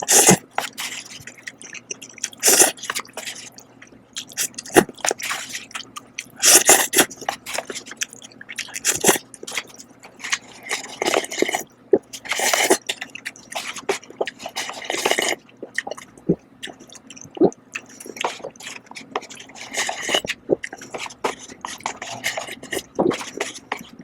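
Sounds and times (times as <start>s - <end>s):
slurping noodles: 0.0s - 3.5s, 6.4s - 7.9s, 8.6s - 9.7s, 10.3s - 11.6s, 12.2s - 12.9s, 13.5s - 15.4s, 17.8s - 24.0s
chewing with mouth smacks: 0.0s - 24.0s.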